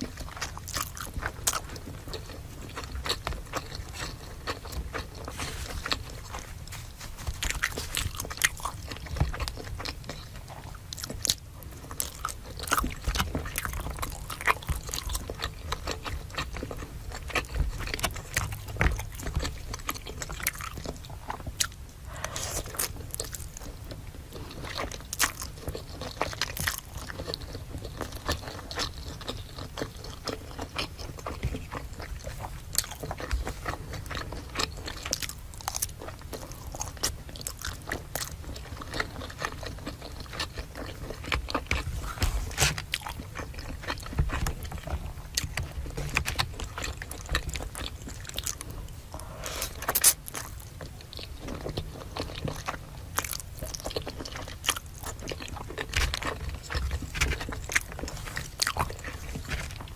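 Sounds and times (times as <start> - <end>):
chewing crispy food: 0.0 - 59.9.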